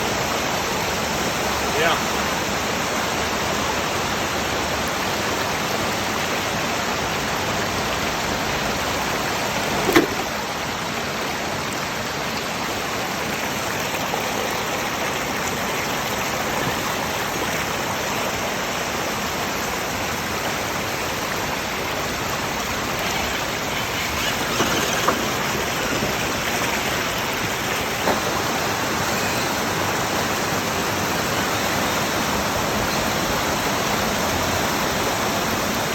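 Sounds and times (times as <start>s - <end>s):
waterfall rushing: 0.0s - 35.9s
sharp knocks: 9.7s - 10.4s.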